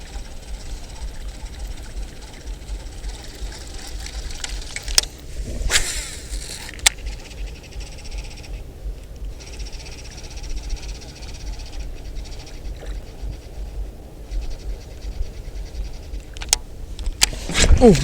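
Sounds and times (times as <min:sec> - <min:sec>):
fine high-pitched rattle: 0:00.0 - 0:12.6
wind buffeting microphone: 0:00.0 - 0:18.0.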